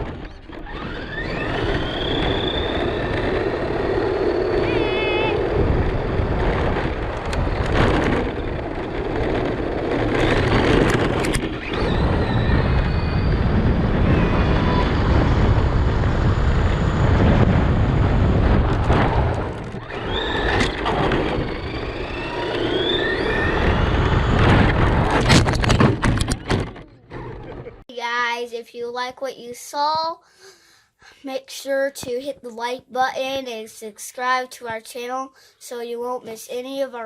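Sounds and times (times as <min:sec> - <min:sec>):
rc car motor whine: 0:00.0 - 0:26.4
road rumble and wind: 0:00.0 - 0:27.9.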